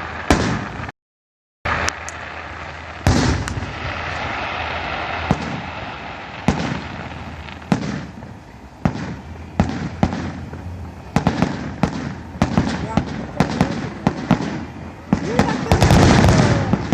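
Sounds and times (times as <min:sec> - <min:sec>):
fireworks hissing crackle: 0:00.0 - 0:00.9, 0:01.7 - 0:16.9
fireworks booming: 0:00.0 - 0:01.0, 0:01.7 - 0:16.9.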